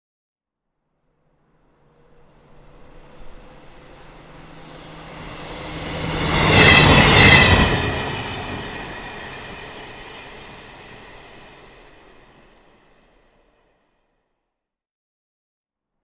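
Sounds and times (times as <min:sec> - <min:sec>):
train passing: 0:01.2 - 0:13.8.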